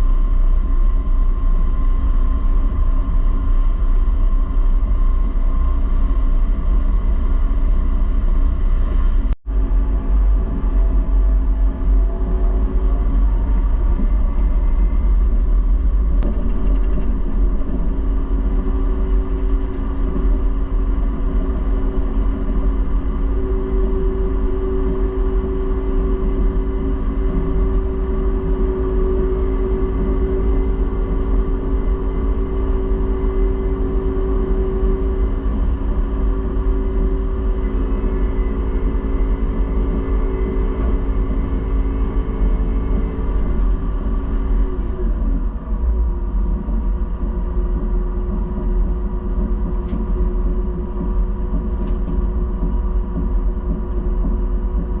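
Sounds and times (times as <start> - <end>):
combine harvester rumbling: 0.0 - 55.0
steady hum: 0.0 - 55.0.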